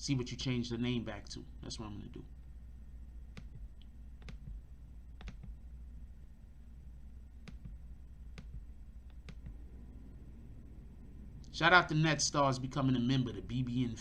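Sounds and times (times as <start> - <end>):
low steady hum: 0.0 - 14.0
computer input clicks: 5.2 - 5.6.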